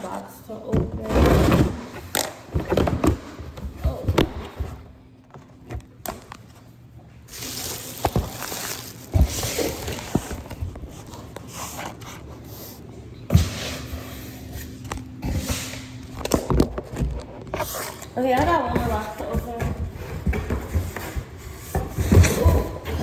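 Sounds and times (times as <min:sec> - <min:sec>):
packaging rustling: 0:02.0 - 0:12.9.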